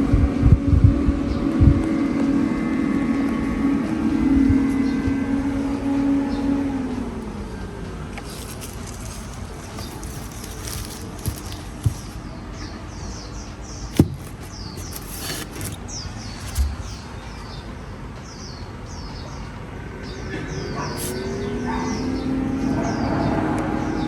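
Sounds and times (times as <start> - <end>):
low hum rising in pitch: 0.0 - 9.0
small birds chirping: 8.2 - 23.1.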